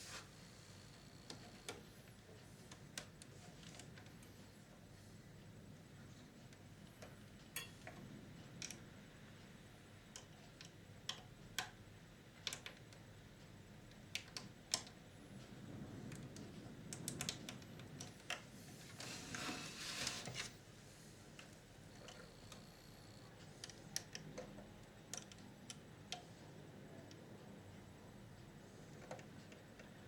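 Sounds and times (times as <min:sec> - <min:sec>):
faint background hum: 0:00.0 - 0:30.0
rustling: 0:18.2 - 0:21.4.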